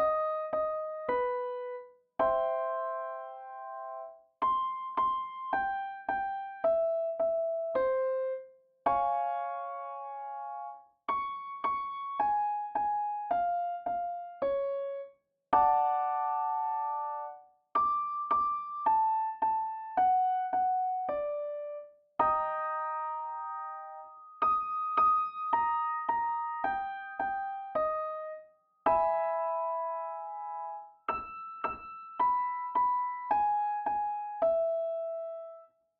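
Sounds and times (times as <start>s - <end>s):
piano playing warm-up pattern: 0.0s - 35.9s.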